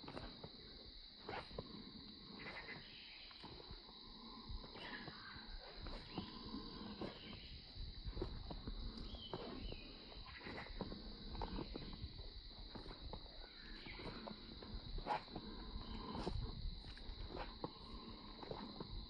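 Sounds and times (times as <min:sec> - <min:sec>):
high-pitched insect drone: 0:00.0 - 0:19.0.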